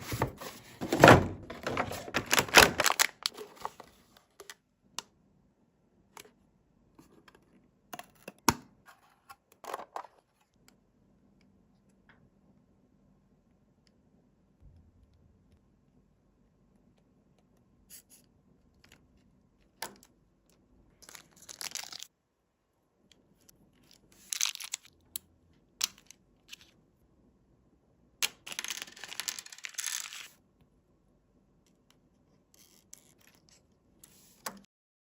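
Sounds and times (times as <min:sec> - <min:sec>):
packaging tearing and rustling: 0:00.0 - 0:03.9, 0:21.1 - 0:22.1, 0:24.2 - 0:24.9.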